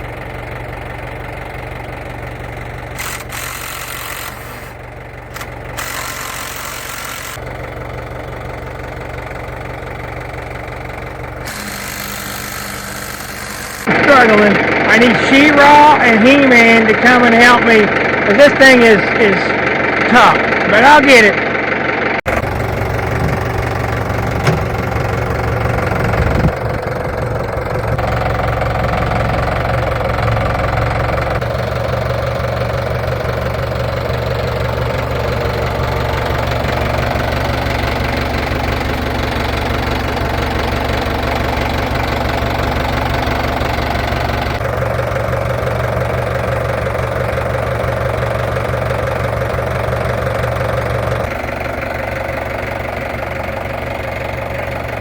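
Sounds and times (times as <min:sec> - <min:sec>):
tractor engine knocking clatter: 0:00.0 - 0:55.0.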